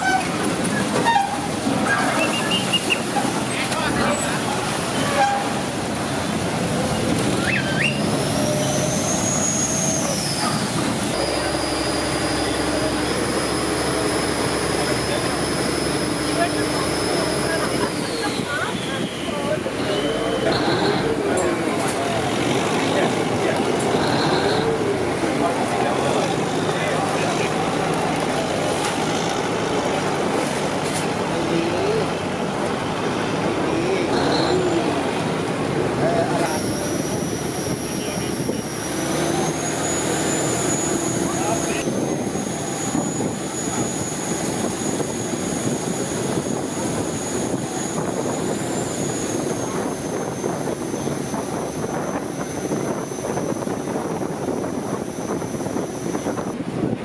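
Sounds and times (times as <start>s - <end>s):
short squeal: 0.0s - 3.1s, 7.4s - 21.1s
road traffic passing: 0.0s - 57.0s
vehicle in motion: 0.0s - 57.0s
faint voices: 11.1s - 56.6s.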